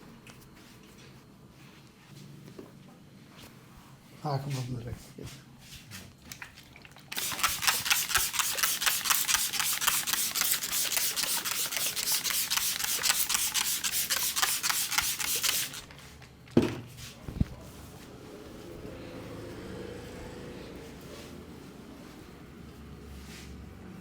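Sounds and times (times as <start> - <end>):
palms rubbing over hair: 7.2 - 16.1.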